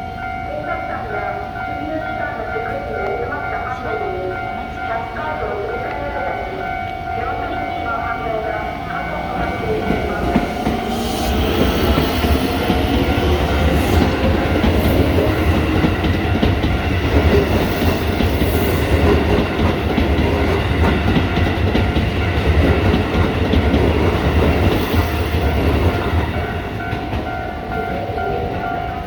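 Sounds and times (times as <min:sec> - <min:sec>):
train wheels clattering over rails: 0:09.6 - 0:28.0.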